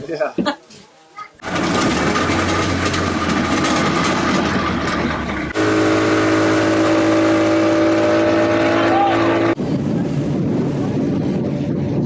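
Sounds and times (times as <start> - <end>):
motorboat engine running: 1.4 - 12.0
rush of wind and water: 5.6 - 12.0.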